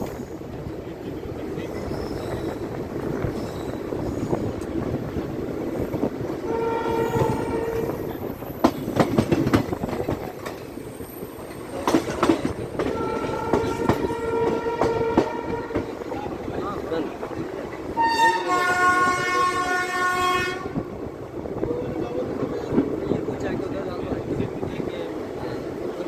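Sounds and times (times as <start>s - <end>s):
train rumbling on rails: 0.0s - 26.0s
train horn blasts: 6.4s - 8.1s, 12.8s - 15.9s, 17.9s - 21.0s
wheels clacking over rail joints: 7.0s - 18.0s.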